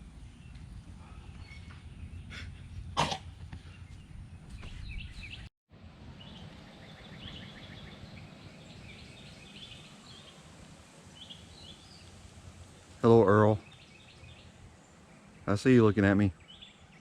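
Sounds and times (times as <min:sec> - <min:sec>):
small birds chirping: 0:00.0 - 0:05.5, 0:06.2 - 0:17.0
wind on microphone: 0:01.1 - 0:05.5.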